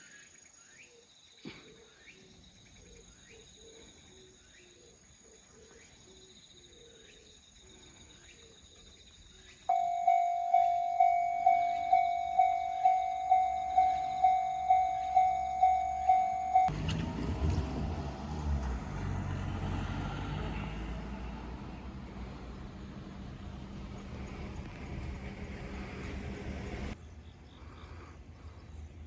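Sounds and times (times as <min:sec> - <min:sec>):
level-crossing alarm ringing: 0:09.7 - 0:16.8.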